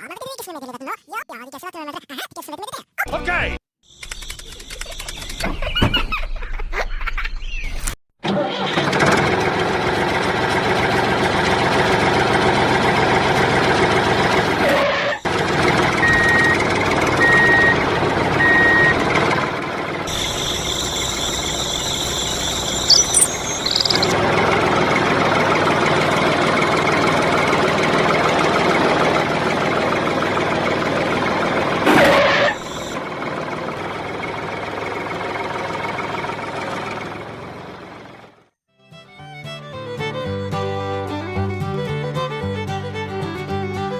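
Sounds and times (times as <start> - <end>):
tractor engine running: 8.8 - 14.6, 15.3 - 38.5
short beeps: 20.1 - 24.2.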